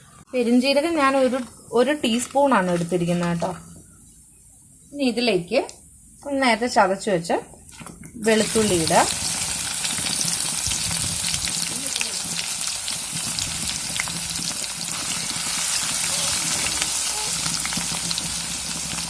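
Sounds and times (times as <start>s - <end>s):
garlic sizzling in oil: 8.2s - 19.0s.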